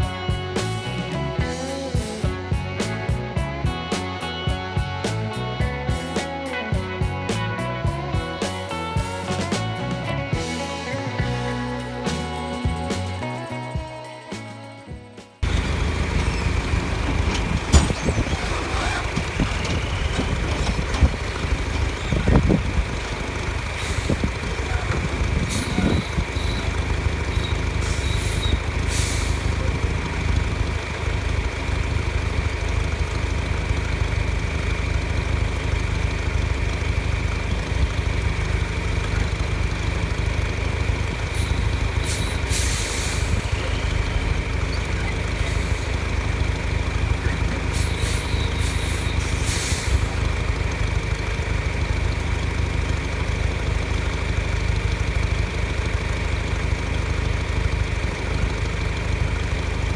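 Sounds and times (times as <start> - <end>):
diesel engine drone: 0.0 - 13.5, 15.4 - 59.9
knocks and rattles: 15.4 - 42.1.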